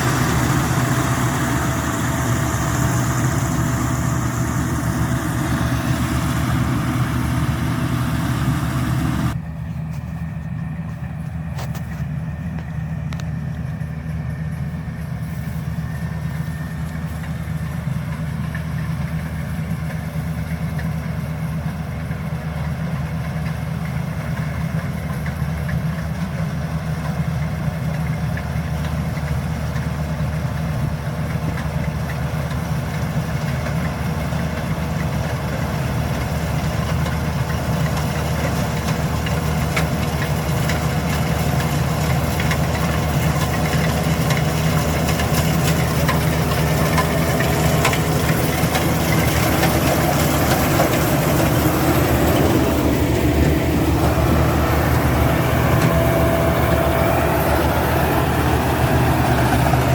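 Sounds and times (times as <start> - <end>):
harvester engine humming: 0.0 - 59.9.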